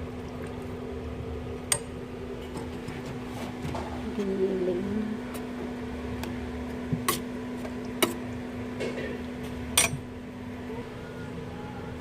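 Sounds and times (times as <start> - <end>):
steady low hum: 0.0 - 12.0
kitchenware clinking: 9.8 - 10.0.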